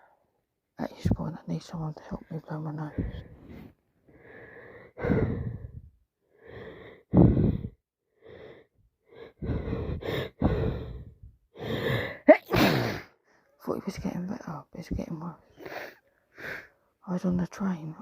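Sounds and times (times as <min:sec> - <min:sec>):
person sniffling through blocked nose: 0:12.5 - 0:13.1.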